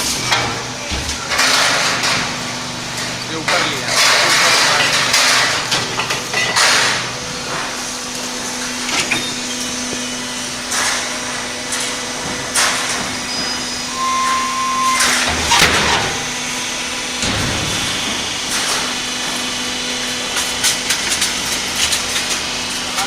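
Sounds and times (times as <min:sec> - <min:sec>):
scrap iron clanking: 0:00.0 - 0:07.7, 0:11.7 - 0:19.0
hydraulic press motor hum: 0:06.8 - 0:19.8.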